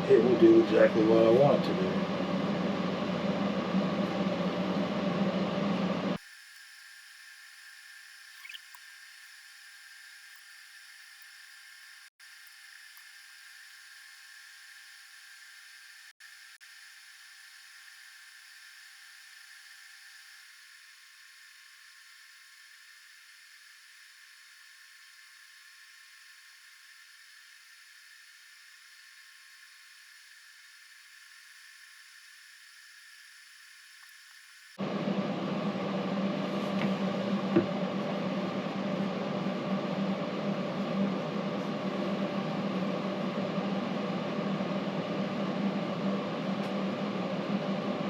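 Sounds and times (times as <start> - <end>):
air conditioner running: 0.0 - 6.2, 34.8 - 48.0
motor whirring: 6.2 - 34.8
thin steady tone: 6.2 - 34.8.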